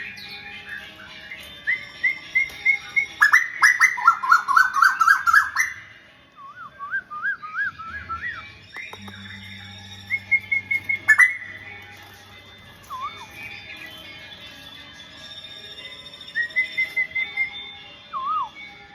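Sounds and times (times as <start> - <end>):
bird singing whistled notes: 0.0 - 18.9
low steady hum: 6.3 - 14.8.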